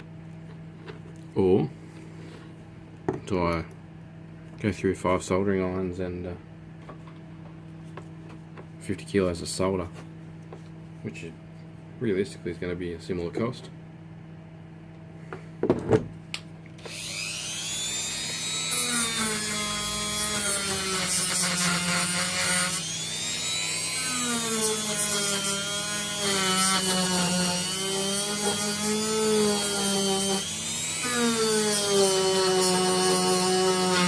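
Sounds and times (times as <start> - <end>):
rotary tool whining: 16.8 - 34.0.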